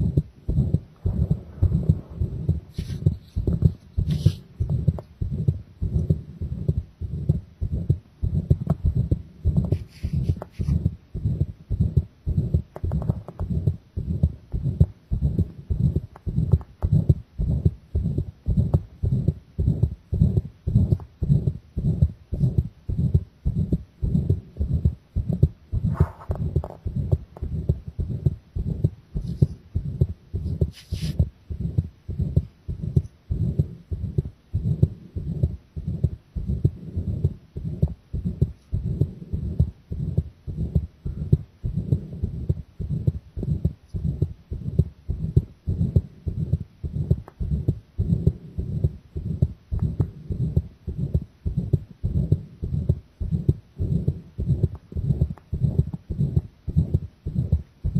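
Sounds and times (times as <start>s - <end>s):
heartbeat pounding: 0.0s - 57.9s
brief scratchy noises: 2.7s - 3.4s, 30.7s - 31.2s.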